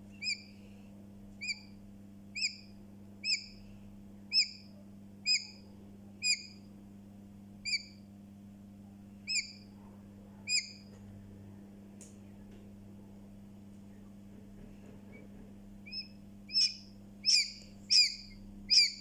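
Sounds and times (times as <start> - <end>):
chick peeping: 9.3 - 9.7, 10.5 - 10.9, 15.8 - 19.0.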